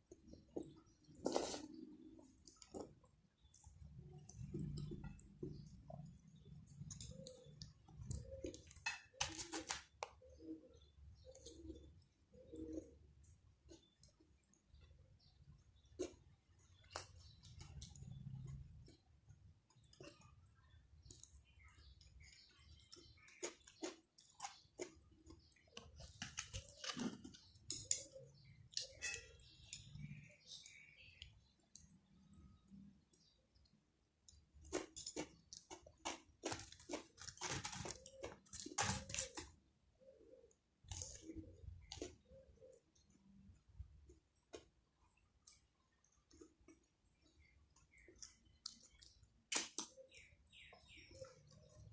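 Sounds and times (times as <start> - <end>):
person chewing food: 0.0 - 32.4, 33.0 - 39.6, 40.8 - 51.9
person chewing: 22.2 - 28.0, 34.2 - 39.5.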